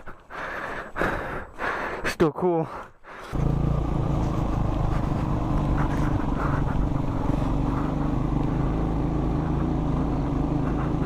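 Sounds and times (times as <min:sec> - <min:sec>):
motorcycle engine running: 0:03.3 - 0:11.0.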